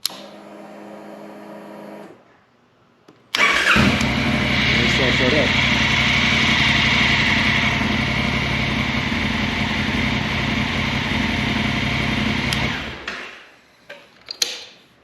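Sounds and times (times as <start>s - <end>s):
motorcycle engine idling: 3.7s - 13.0s.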